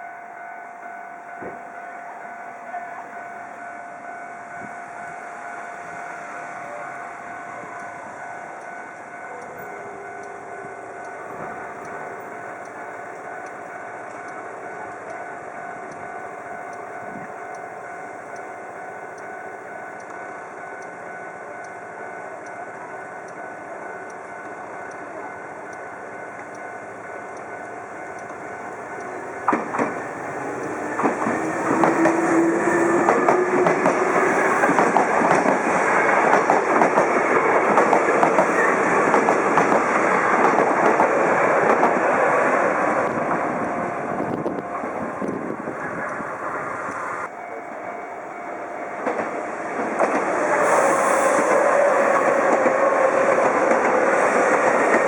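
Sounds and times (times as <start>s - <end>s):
train rumble: 0.0s - 55.0s
train whine sliding down: 19.1s - 55.0s.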